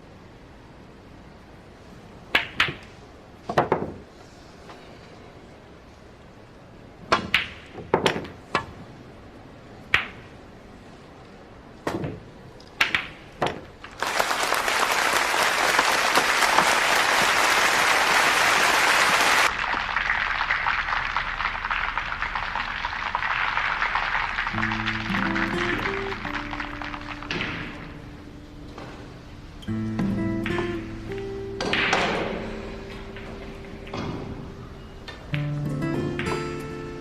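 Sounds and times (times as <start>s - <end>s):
audience applause: 13.9s - 27.9s
billiard balls clicking: 24.5s - 28.0s.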